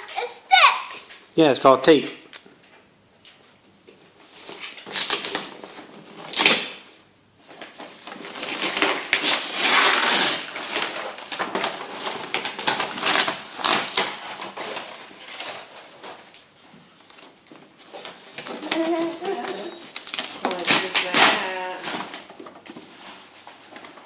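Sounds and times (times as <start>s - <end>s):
wrapping paper tearing: 4.5s - 6.8s, 7.9s - 16.5s, 18.1s - 24.0s.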